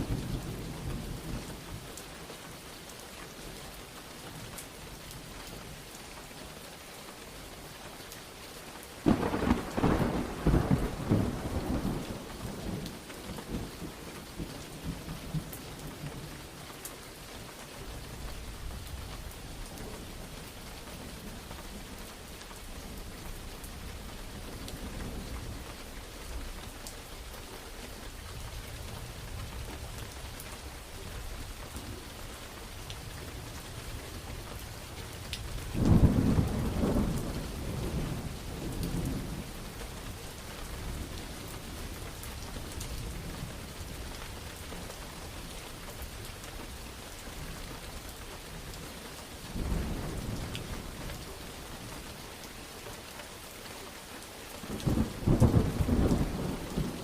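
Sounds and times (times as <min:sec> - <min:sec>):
steady rain: 0:00.0 - 0:57.0
crackling thunderclaps: 0:09.0 - 0:16.6, 0:33.0 - 0:44.9, 0:49.4 - 0:51.2, 0:54.7 - 0:57.0.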